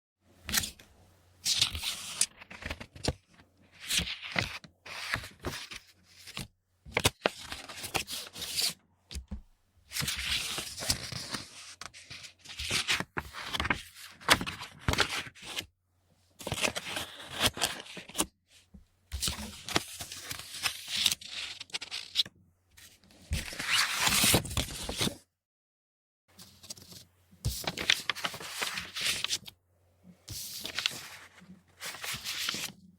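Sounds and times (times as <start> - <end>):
paper rustling and sliding: 1.5 - 8.8, 9.9 - 15.6, 26.4 - 29.5, 30.3 - 32.8.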